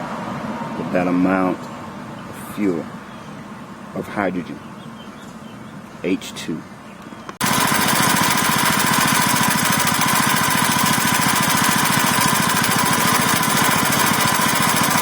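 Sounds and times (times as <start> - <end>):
small engine running: 7.4 - 15.0.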